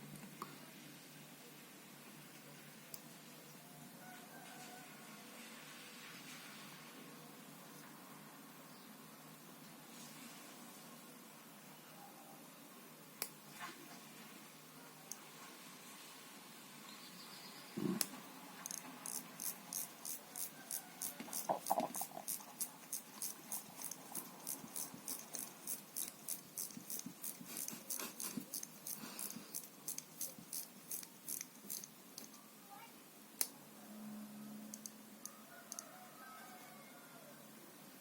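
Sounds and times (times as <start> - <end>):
alarm watch clicking: 18.6 - 32.3.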